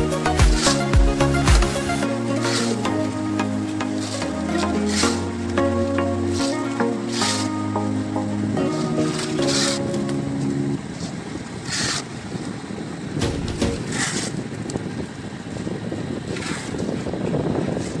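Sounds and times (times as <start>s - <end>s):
music: 0.0s - 10.8s, 13.2s - 13.9s
rough steady rumbling: 0.0s - 18.0s.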